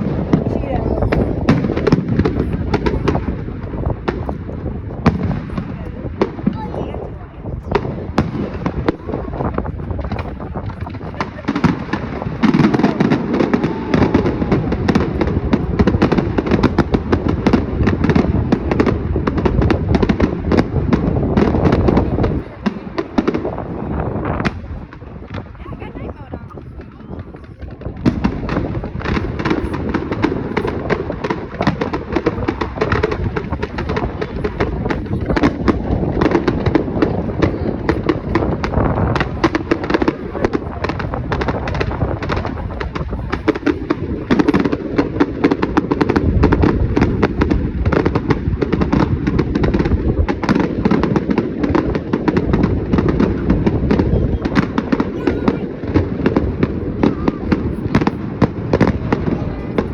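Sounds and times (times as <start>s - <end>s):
fireworks bangs and crackles: 0.0s - 59.9s.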